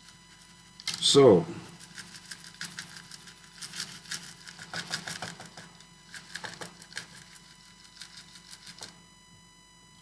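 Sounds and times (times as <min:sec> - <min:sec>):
rosin pieces clicking and tapping: 0:01.8 - 0:08.9.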